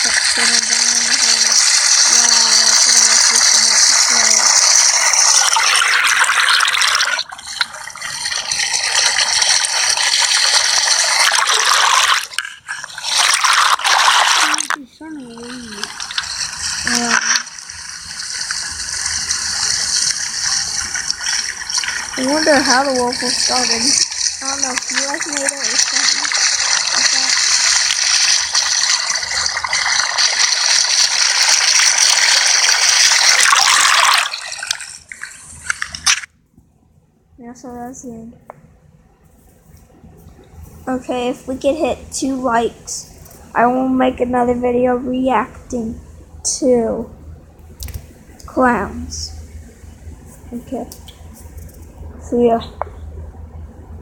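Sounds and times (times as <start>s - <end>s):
gushing whirlpool water: 0.0s - 36.3s.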